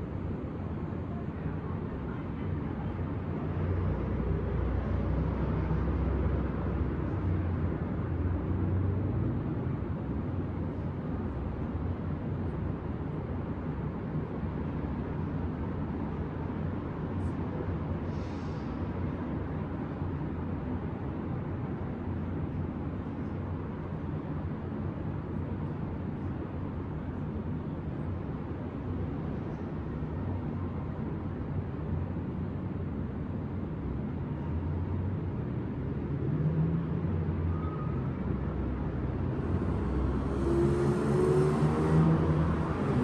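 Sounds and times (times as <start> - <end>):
city traffic rumble: 0.0 - 43.0
brief hiss: 18.1 - 18.8.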